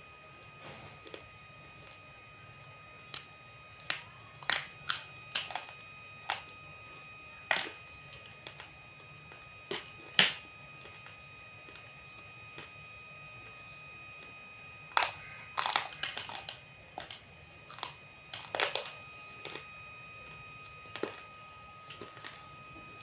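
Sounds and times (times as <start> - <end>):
faint steady whine: 0.0 - 23.0
clay pieces cracking and crunching: 2.6 - 23.0.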